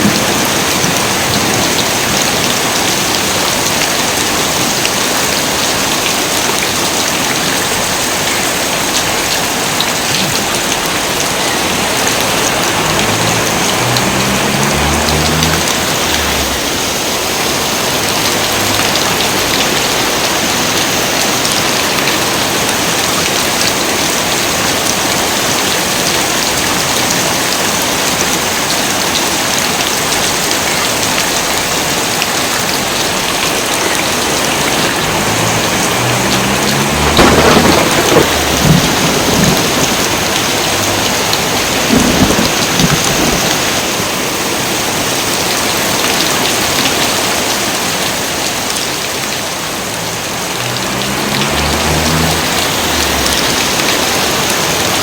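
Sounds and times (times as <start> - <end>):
heavy rain falling: 0.0 - 55.0
thunder rumbling: 34.2 - 43.8, 50.1 - 55.0.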